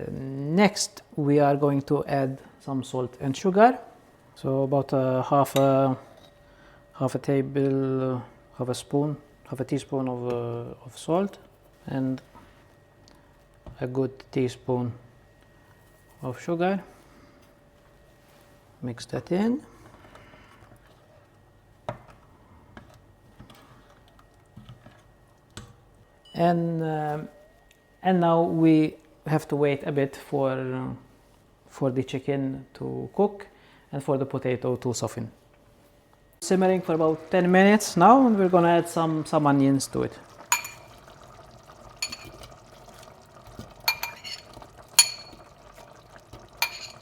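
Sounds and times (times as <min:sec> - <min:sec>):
curry simmering: 0:36.4 - 0:47.0
utensil clinking against pot: 0:40.3 - 0:47.0
spoon knocking against pot: 0:40.5 - 0:41.0, 0:42.0 - 0:42.4, 0:43.8 - 0:45.5, 0:46.5 - 0:47.0.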